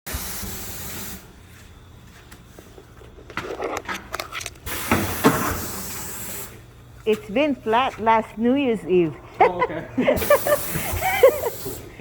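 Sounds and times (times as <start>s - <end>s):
compressed air hissing: 0.1s - 1.4s, 4.6s - 6.7s, 10.1s - 12.0s.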